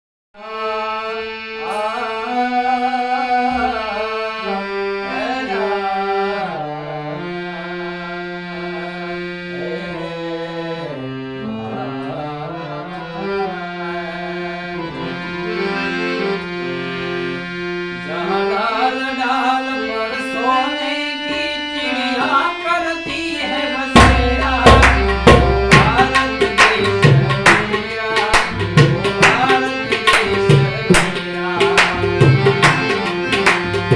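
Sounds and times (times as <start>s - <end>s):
harmonium melody: 0.4s - 33.9s
tabla strikes: 24.0s - 33.9s.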